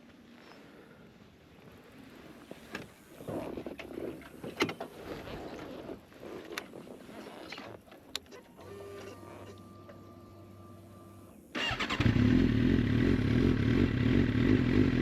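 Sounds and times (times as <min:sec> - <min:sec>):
fuel pump electric hum: 0:08.6 - 0:14.6.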